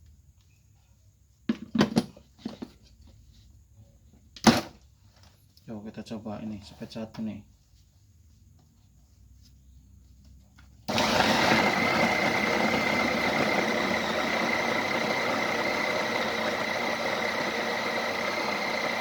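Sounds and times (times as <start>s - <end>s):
electric chopper motor whining: 10.9s - 19.0s.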